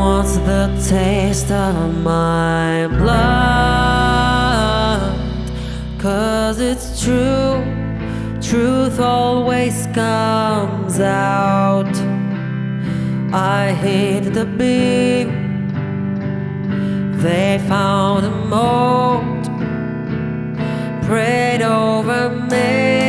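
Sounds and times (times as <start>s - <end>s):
wavering melody line: 0.0s - 8.0s
guitar: 0.0s - 23.0s.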